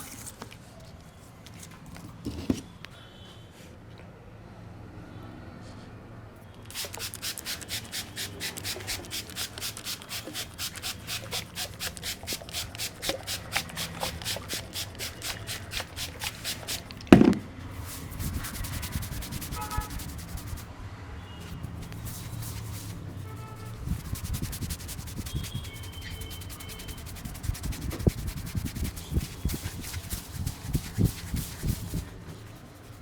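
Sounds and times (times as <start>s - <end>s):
rhythmic scraping strokes: 6.7s - 17.0s, 17.7s - 20.6s, 21.5s - 33.0s
loud thump: 17.1s - 17.6s.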